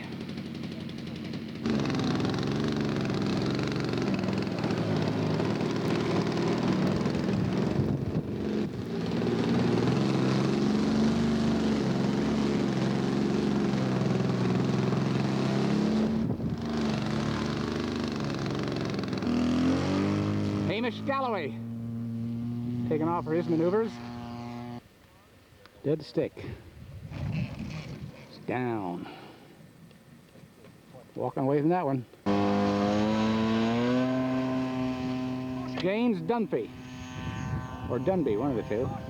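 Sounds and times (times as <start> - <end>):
model aircraft engine running: 0.0 - 24.8, 32.2 - 39.0.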